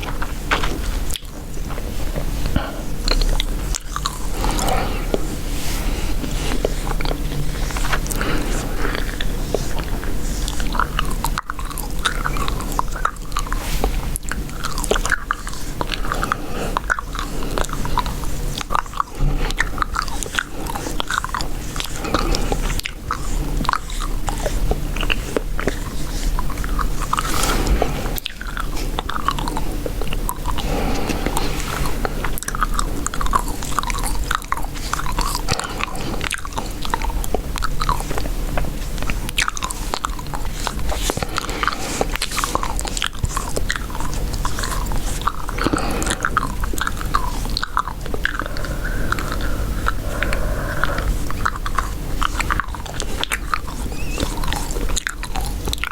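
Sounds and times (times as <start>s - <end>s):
gum chewing: 0.0s - 55.9s.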